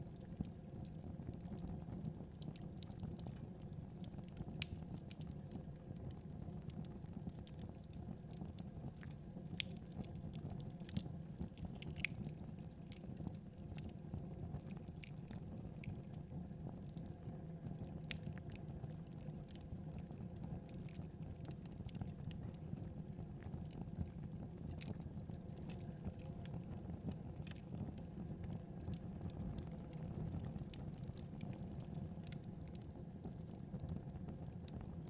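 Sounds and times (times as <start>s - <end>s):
wood fire crackling: 4.3s - 5.3s, 6.0s - 14.0s, 16.7s - 35.0s.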